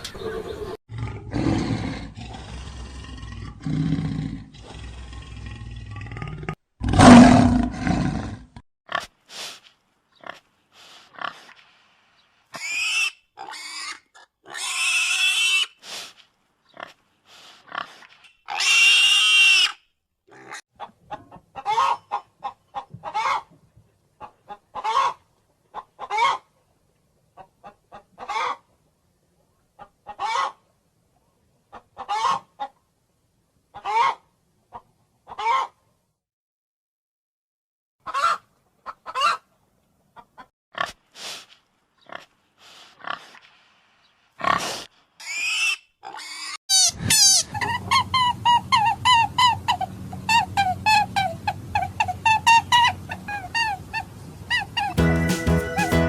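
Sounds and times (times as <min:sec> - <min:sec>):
animal roaring: 0:00.9 - 0:08.6.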